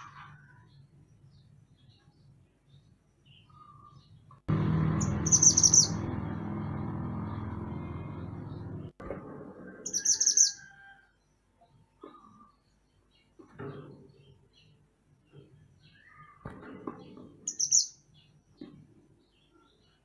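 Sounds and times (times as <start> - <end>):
songbird chirping: 0.0 - 9.0, 9.9 - 20.0.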